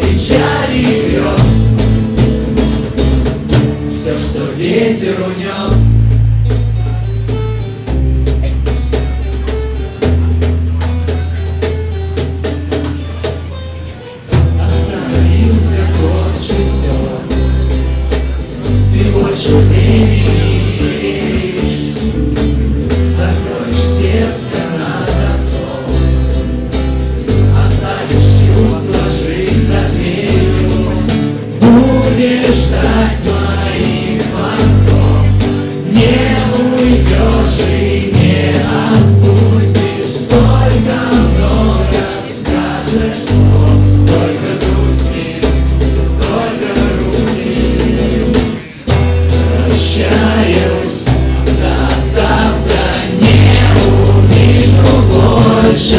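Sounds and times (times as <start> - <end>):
bass line: 0.0 - 4.6, 5.7 - 13.6, 14.3 - 55.9
person singing: 18.7 - 22.2, 27.3 - 45.4, 49.5 - 55.9.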